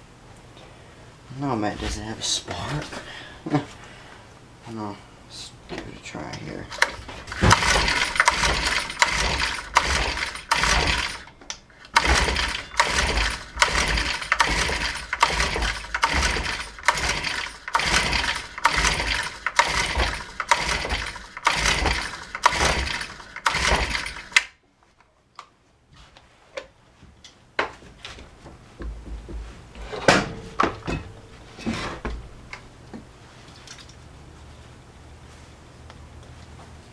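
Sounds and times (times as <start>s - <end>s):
engine cranking: 6.7s - 11.3s, 11.9s - 24.5s
recoil starter pulls: 6.7s - 24.5s.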